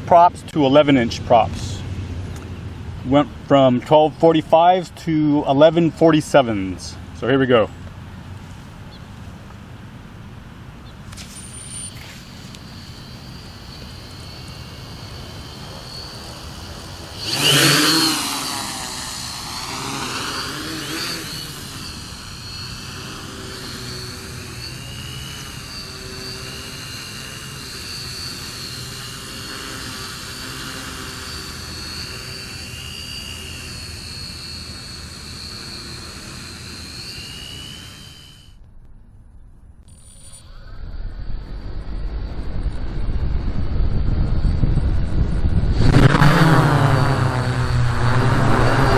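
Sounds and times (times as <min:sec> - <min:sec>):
quadcopter motors buzzing whine: 0:00.0 - 0:38.7, 0:39.8 - 0:48.9.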